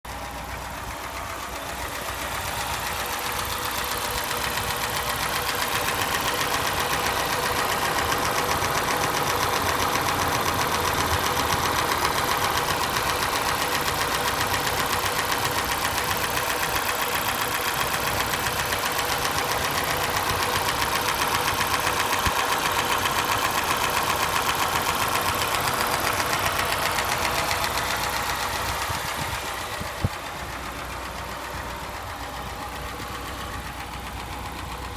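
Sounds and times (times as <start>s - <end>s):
car engine running: 0.1s - 34.9s
rapid regular engine knock: 0.1s - 34.9s.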